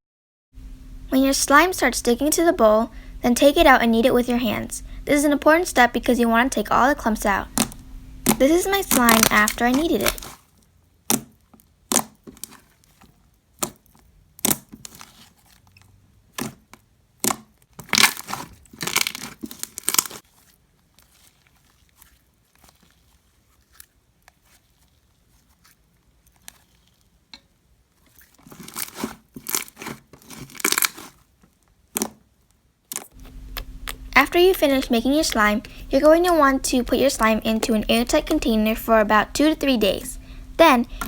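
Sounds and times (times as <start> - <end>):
slime squished by hand: 11.0 - 15.6, 16.3 - 34.2.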